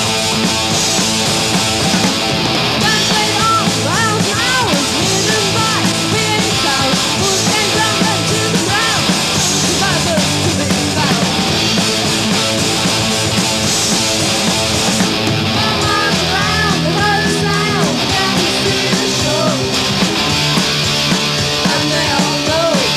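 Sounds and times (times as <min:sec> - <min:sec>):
bass guitar: 0:00.0 - 0:22.9
distorted electric guitars: 0:00.0 - 0:22.9
drums: 0:00.0 - 0:22.9
high bending guitar lead: 0:00.0 - 0:22.9.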